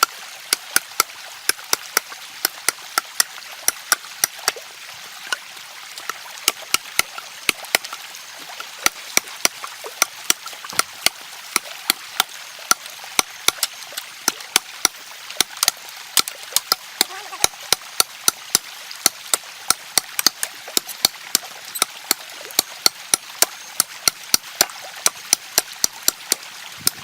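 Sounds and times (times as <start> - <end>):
stream rushing: 0.0 - 27.0
sharp cracks and knocks: 8.8 - 16.8.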